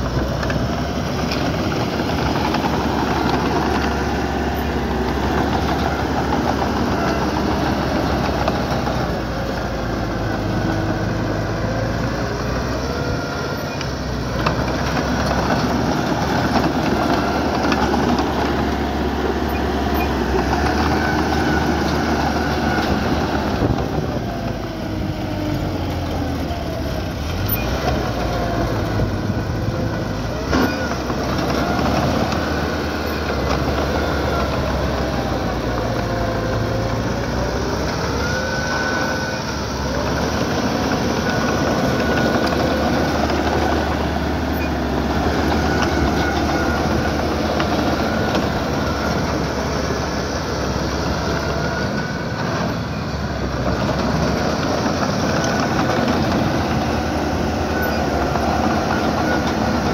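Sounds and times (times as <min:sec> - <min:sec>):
bulldozer diesel engine: 0:00.0 - 0:59.9.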